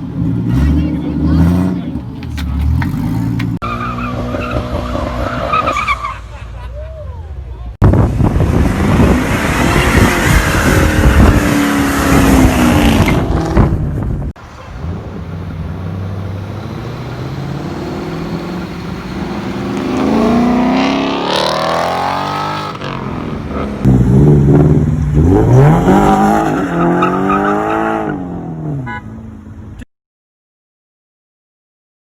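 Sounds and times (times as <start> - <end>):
car engine accelerating: 7.9 - 28.8
car engine revving hard: 8.2 - 13.8, 14.8 - 28.9.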